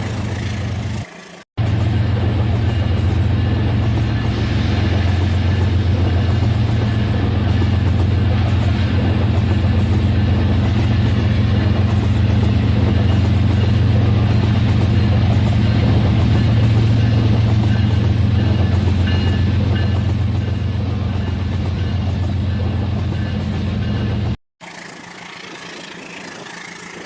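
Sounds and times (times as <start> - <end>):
toy train motor humming: 24.6 - 27.0.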